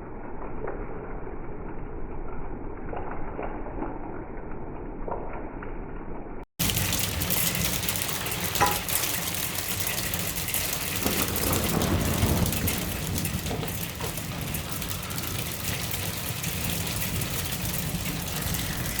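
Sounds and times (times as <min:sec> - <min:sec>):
hail and rain pelting: 0:06.6 - 0:19.0.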